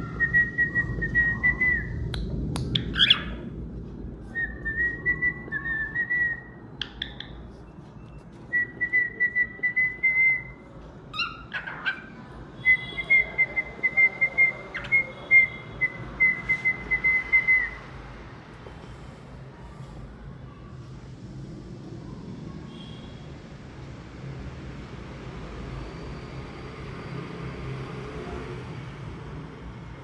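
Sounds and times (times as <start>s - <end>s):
bird whistling song: 0.0s - 3.4s, 4.3s - 7.7s, 8.5s - 17.8s
harsh bird chirps: 2.7s - 3.5s, 4.4s - 7.8s, 8.6s - 17.8s.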